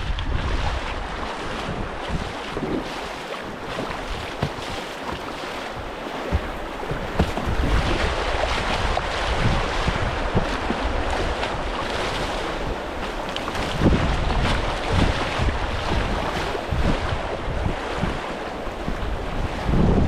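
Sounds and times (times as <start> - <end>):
paddle strokes splashing: 0.0 - 19.9
rushing river water: 0.0 - 20.0
wind buffeting microphone: 0.0 - 20.0.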